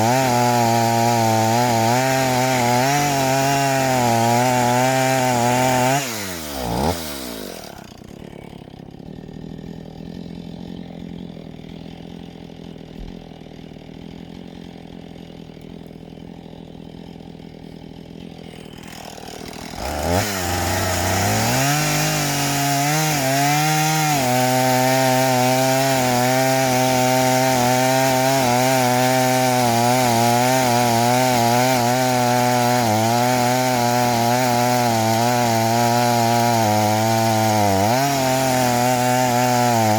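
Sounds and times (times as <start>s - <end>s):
chainsaw cutting log: 0.0s - 39.9s
chainsaw idling and revving: 0.0s - 39.9s.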